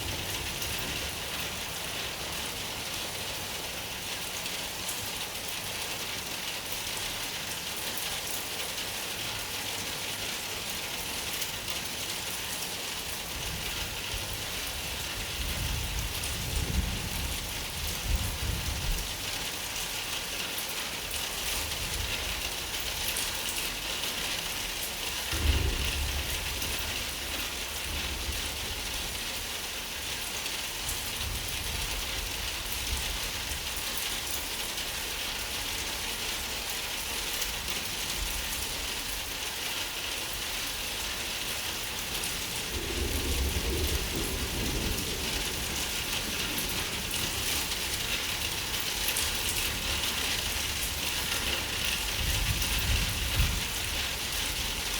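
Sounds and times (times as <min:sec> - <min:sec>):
heavy rain: 0:00.0 - 0:54.9
thunder clap: 0:25.3 - 0:29.1, 0:42.7 - 0:47.8
low thunder rumble: 0:25.3 - 0:29.6, 0:42.5 - 0:48.0.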